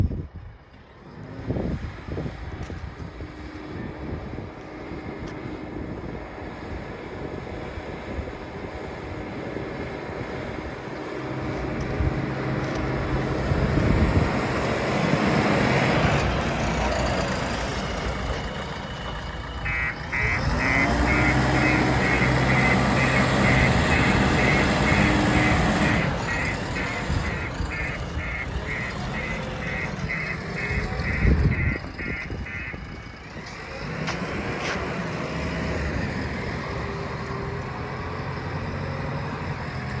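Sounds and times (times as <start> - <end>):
diesel engine running and revving: 0.0 - 40.0
electronic alarm beeping: 19.7 - 32.7.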